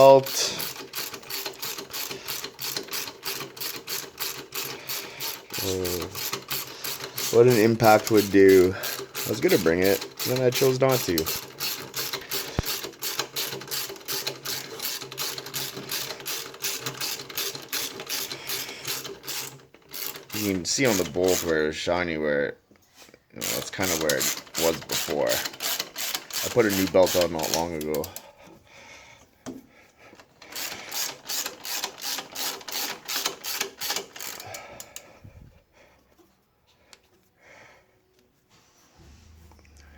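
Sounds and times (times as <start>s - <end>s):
ratchet wrench clicking: 0.0s - 21.6s, 23.4s - 28.2s, 30.4s - 35.0s.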